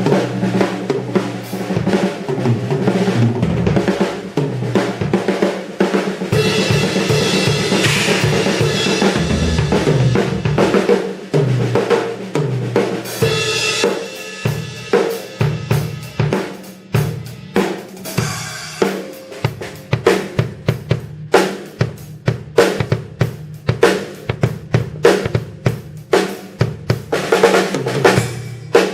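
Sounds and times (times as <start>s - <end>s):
drum kit solo: 0.0s - 28.9s
cymbal crashes: 6.4s - 11.1s.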